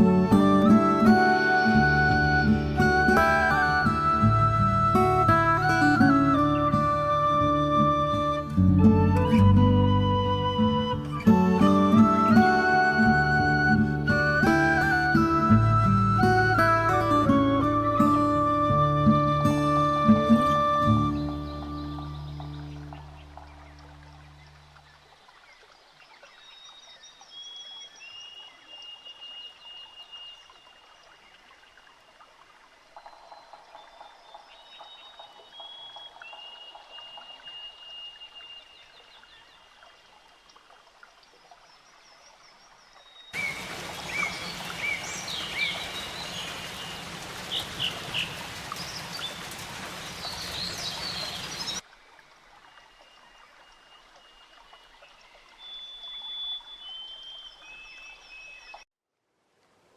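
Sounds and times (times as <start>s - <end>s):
running water: 0.0s - 58.9s
high whistled bird calls: 26.1s - 30.9s, 33.0s - 39.8s, 42.6s - 49.4s, 50.0s - 51.8s, 52.9s - 58.9s.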